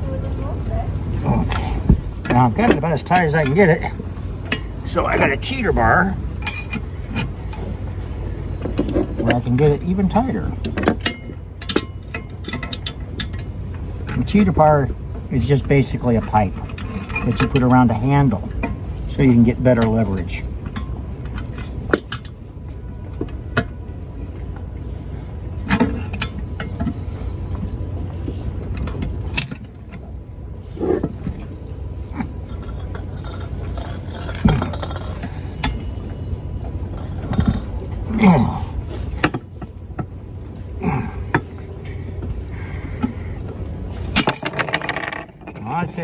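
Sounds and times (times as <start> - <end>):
steady low hum: 0.0 - 46.0
wrench clanking against metal: 1.4 - 22.5, 25.6 - 27.9, 28.6 - 30.1, 32.1 - 40.1, 44.0 - 46.0.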